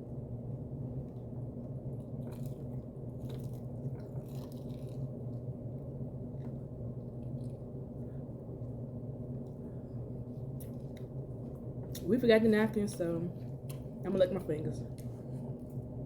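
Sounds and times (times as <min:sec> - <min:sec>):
steady low hum: 0:00.0 - 0:16.0
chewing crunchy chicken wings: 0:01.9 - 0:05.5.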